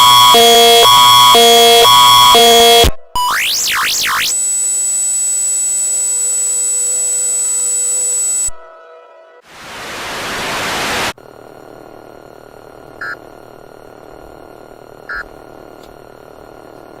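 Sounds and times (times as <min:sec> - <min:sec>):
burst of static: 0:09.5 - 0:11.2.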